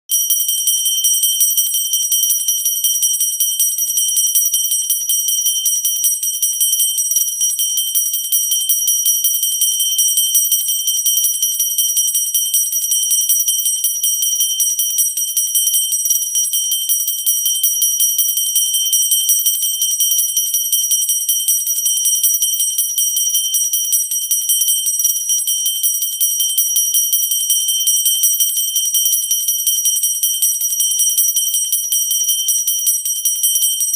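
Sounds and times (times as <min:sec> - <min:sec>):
bell rung rapidly: 0:00.1 - 0:33.9.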